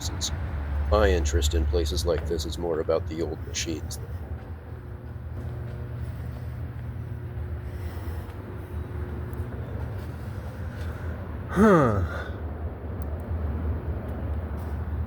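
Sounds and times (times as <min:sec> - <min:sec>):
low background rumble: 0:02.2 - 0:15.0
man saying huh: 0:11.5 - 0:12.4.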